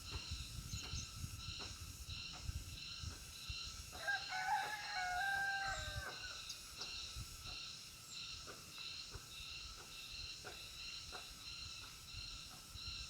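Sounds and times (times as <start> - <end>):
rooster crowing: 4.0 - 6.2.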